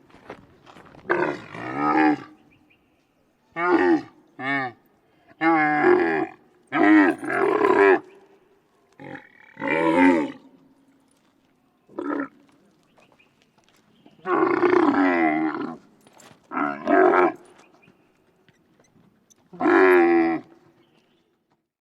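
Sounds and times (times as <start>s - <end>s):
camel grunting: 1.0s - 2.4s, 3.6s - 8.2s, 9.0s - 10.5s, 14.2s - 15.9s, 16.5s - 17.6s, 19.5s - 20.7s.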